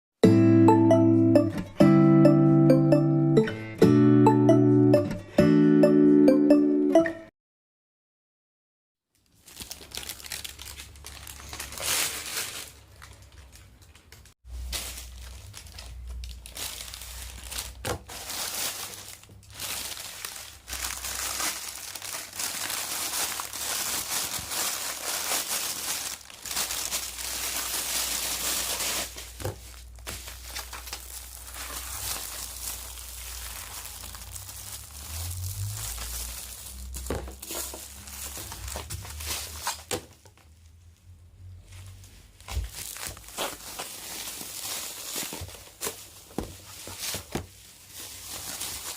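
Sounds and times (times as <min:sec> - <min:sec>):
packaging crinkling and rustling: 0:09.1 - 0:40.6, 0:41.8 - 0:48.9.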